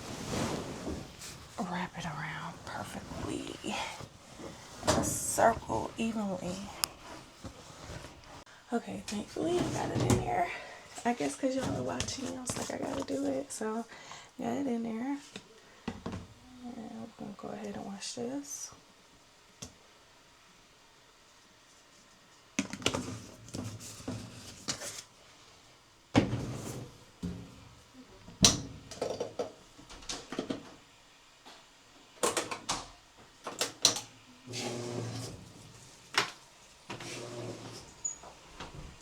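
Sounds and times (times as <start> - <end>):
rustling: 0.0 - 8.5.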